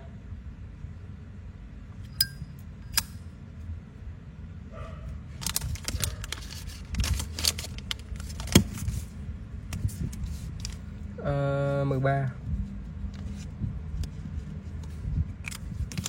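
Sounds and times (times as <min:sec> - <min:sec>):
metal lighter clicks and clinks: 0:02.1 - 0:03.2.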